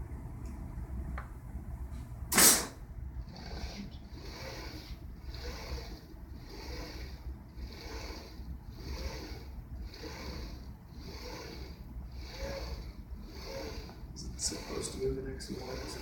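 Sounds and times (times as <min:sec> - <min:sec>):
servo motors whining: 0:03.3 - 0:16.0.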